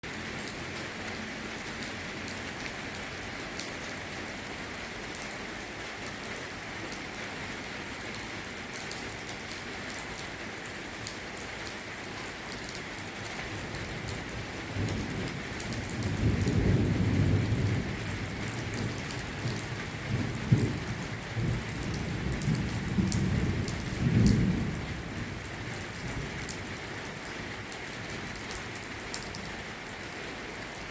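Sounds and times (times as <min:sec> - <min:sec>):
steady rain: 0:00.0 - 0:30.9
thunder rumbling: 0:14.1 - 0:26.9.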